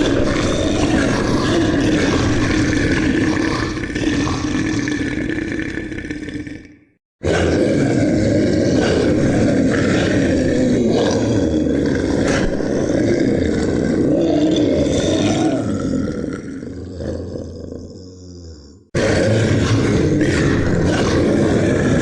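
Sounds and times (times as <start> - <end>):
monster roar: 0.0 - 22.0.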